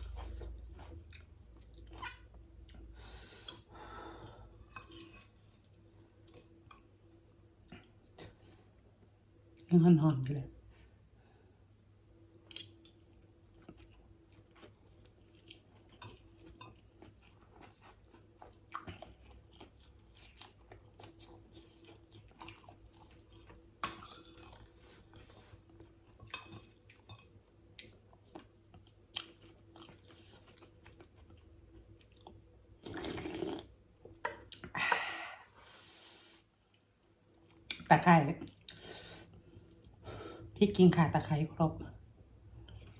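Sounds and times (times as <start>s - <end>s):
person chewing food: 0.0s - 3.8s, 4.4s - 8.4s, 12.3s - 35.5s, 42.6s - 42.9s.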